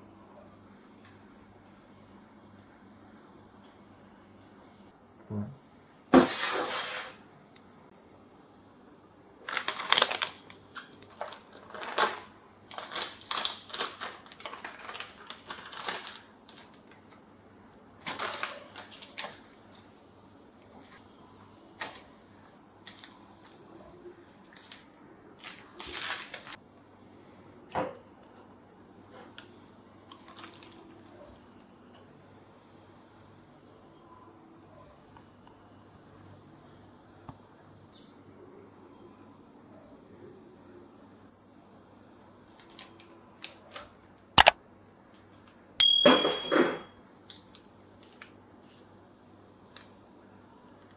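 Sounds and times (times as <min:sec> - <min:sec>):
ringing clink: 0:45.8 - 0:46.9.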